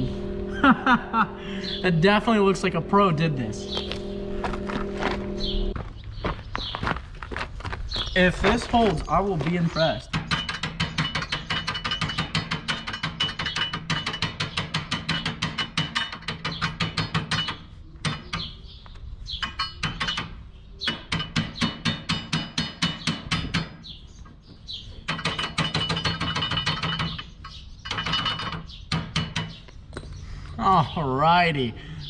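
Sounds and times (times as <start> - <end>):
welder hum: 0.0 - 5.8.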